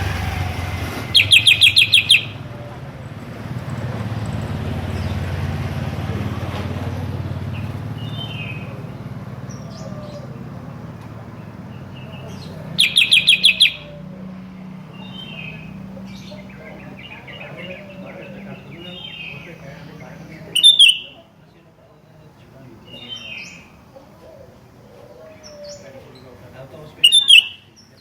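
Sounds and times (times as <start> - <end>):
bird calling in short chirps: 1.2 - 2.4, 20.5 - 21.2, 27.0 - 27.7.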